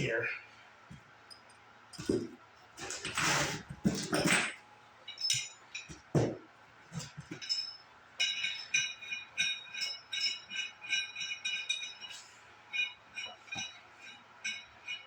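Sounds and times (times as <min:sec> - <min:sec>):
metal parts clinking: 0:07.0 - 0:15.0.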